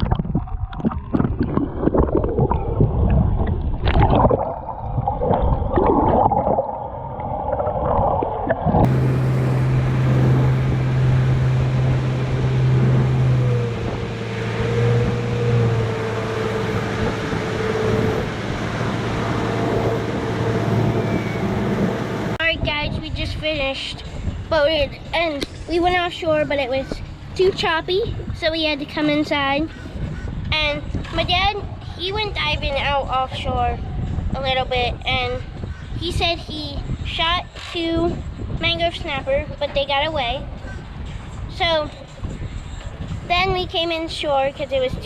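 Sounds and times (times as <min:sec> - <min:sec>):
muffled water gurgling and knocking: 0:00.0 - 0:23.0
wind: 0:00.0 - 0:45.0
outboard motor humming: 0:08.8 - 0:22.5.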